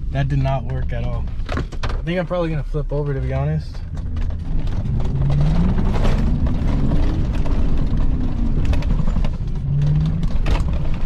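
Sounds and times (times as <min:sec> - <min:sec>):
knocks and clatter from truck: 0:00.4 - 0:02.2, 0:03.7 - 0:11.0
pickup engine revving: 0:04.0 - 0:11.0.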